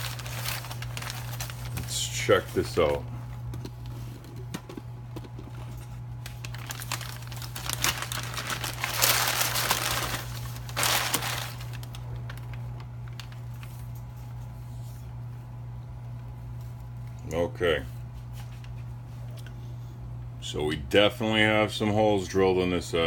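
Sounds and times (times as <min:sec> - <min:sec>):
packaging wrap crinkling: 0:00.0 - 0:14.2
steady low hum: 0:00.0 - 0:23.0.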